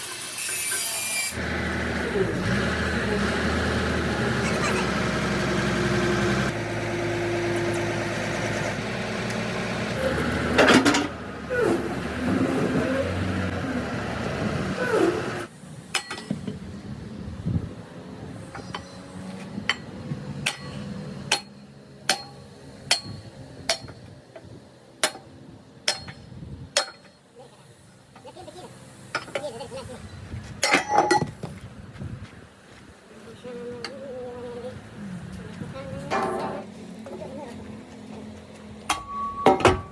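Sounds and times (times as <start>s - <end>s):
engine running steadily: 1.4s - 15.6s.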